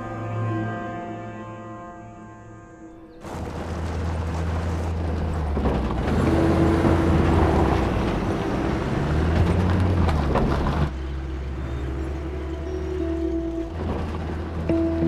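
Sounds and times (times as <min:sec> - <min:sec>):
vehicle engine humming: 0:02.9 - 0:15.0
road and wind noise: 0:03.2 - 0:15.0.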